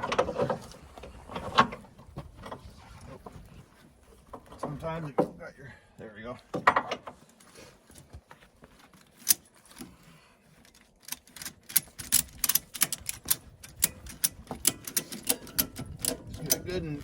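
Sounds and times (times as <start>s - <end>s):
ratchet strap clicking: 9.1s - 9.9s, 10.6s - 16.8s.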